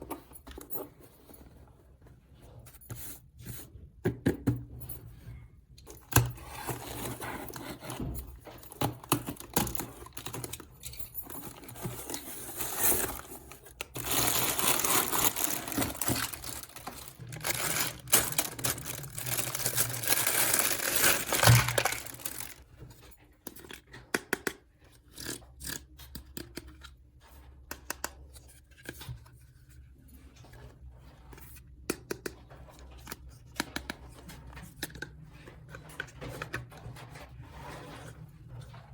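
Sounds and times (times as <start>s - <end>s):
packaging tearing and crinkling: 11.4s - 22.6s.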